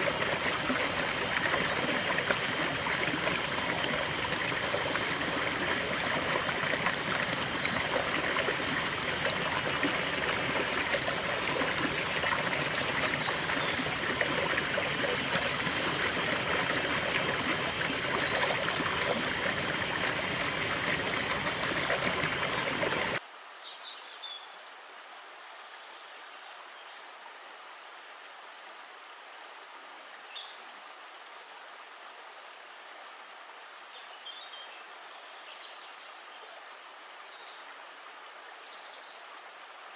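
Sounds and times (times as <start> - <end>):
river water rushing: 0.0 - 23.2.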